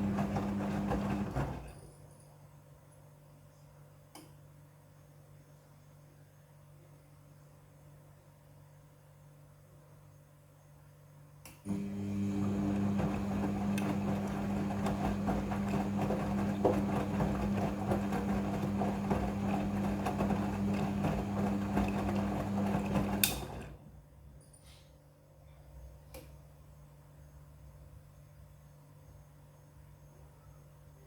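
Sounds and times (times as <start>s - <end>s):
washing machine motor hum: 0.0s - 1.8s, 11.7s - 23.9s.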